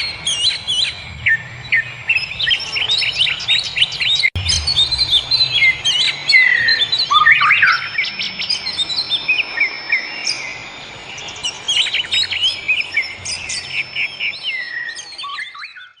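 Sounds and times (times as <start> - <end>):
birds chirping and singing: 0.0 - 16.0
thin steady high tone: 4.4 - 16.0.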